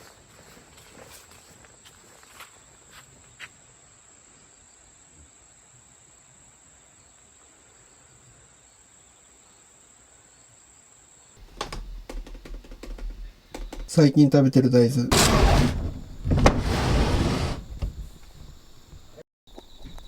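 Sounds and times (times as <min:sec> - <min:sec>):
loud knocks: 0:11.4 - 0:14.1, 0:15.1 - 0:19.2
insects chirring: 0:17.5 - 0:20.0.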